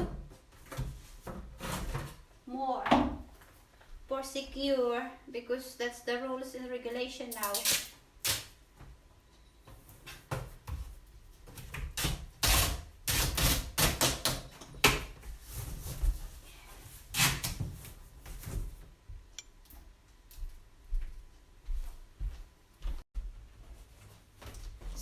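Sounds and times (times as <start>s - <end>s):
packing tape ripping off roll: 7.3s - 8.6s, 11.6s - 14.5s, 17.1s - 17.8s.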